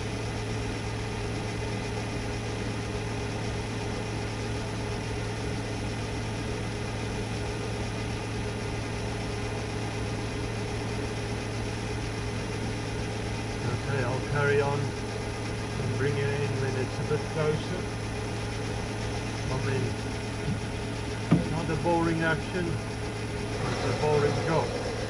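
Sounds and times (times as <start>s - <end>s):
metal lathe running: 8.8s - 25.0s.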